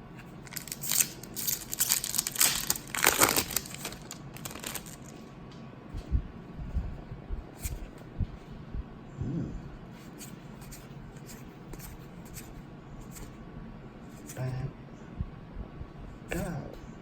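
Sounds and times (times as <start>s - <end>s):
wrapper crinkling and tearing: 0.4s - 5.3s.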